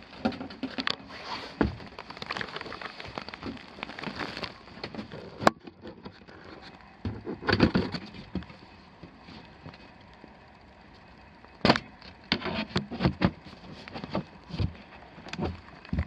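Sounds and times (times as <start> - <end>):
vent cover rattling and scraping: 0.0 - 8.4, 11.7 - 16.0.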